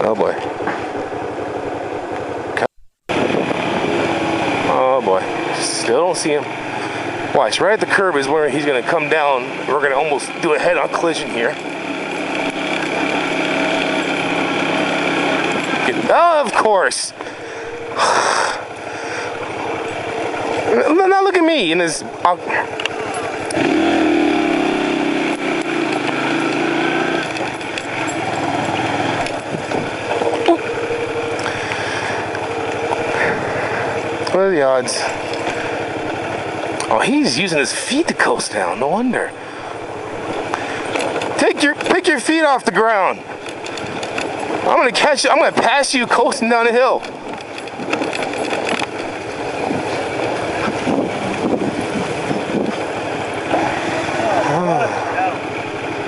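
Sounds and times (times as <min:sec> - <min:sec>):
motorcycle engine running: 0:00.0 - 0:56.0
road noise: 0:00.0 - 0:56.0
wind rushing over microphone: 0:03.1 - 0:04.7, 0:28.7 - 0:30.2, 0:47.8 - 0:54.2.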